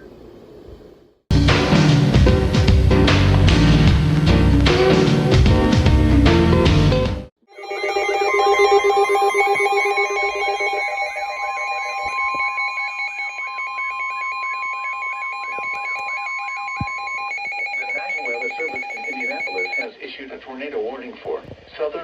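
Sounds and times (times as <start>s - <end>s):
steady warning alarm tone: 7.5s - 19.9s
warbling electronic tone: 7.5s - 19.9s.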